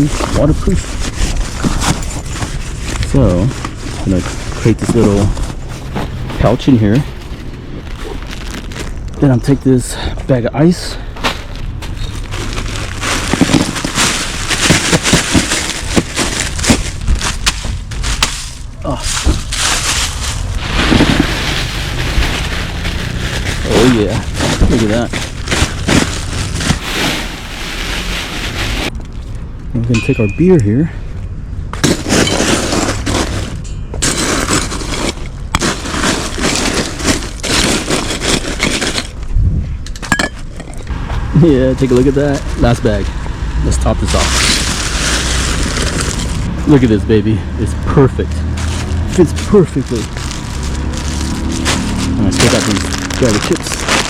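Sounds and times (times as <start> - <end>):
rustling: 0.0 - 9.6, 11.0 - 30.7, 31.7 - 43.2, 44.0 - 46.9, 48.2 - 54.0
ice cubes clattering into pouch: 11.5 - 27.0, 31.8 - 39.2, 44.1 - 46.5, 48.6 - 54.0.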